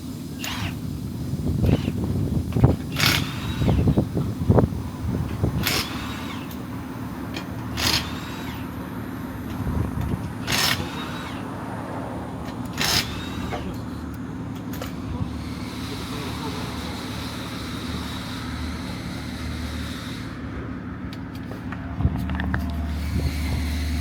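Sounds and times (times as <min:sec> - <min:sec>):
vehicle engine running: 0:00.0 - 0:24.0
sharp bursts of hiss: 0:15.2 - 0:20.5.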